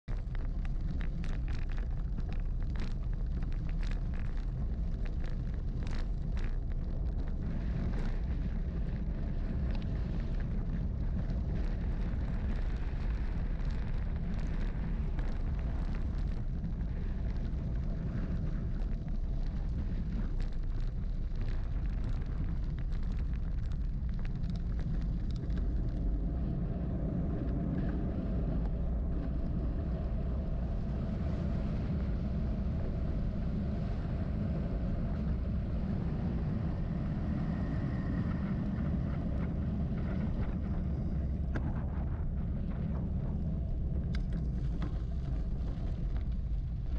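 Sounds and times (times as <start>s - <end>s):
wind buffeting microphone: 0.0s - 46.9s
bicycle ticks and rattles: 0.1s - 26.2s.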